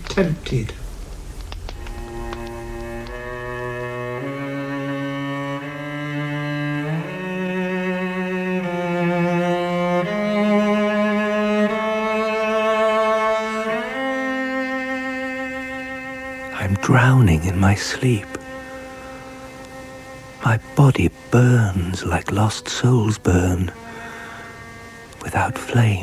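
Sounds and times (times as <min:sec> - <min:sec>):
slow cello music: 0:01.6 - 0:26.0.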